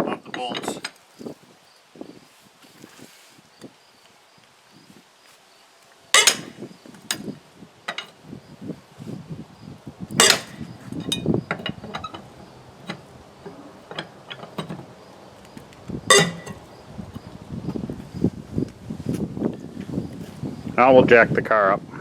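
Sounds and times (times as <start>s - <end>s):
lug wrench clanking on lug nuts: 0.4s - 0.9s, 6.1s - 8.2s, 10.2s - 17.8s.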